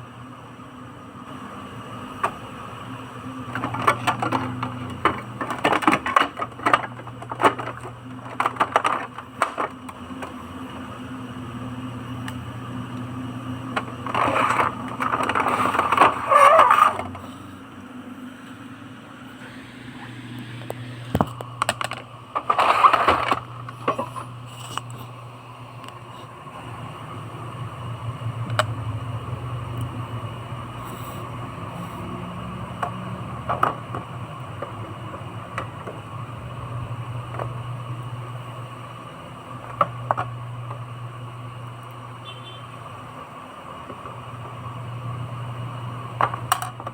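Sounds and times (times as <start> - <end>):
steady low hum: 0.0 - 46.9
plastic parts scraping: 3.4 - 10.4, 13.7 - 17.4, 20.6 - 25.1, 32.8 - 36.0
plastic parts clicking: 3.5 - 10.4, 13.7 - 17.2, 21.1 - 24.1.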